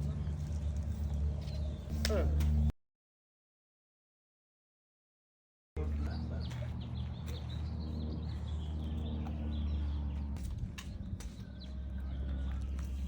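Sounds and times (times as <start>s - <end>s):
small birds chirping: 5.8s - 13.0s.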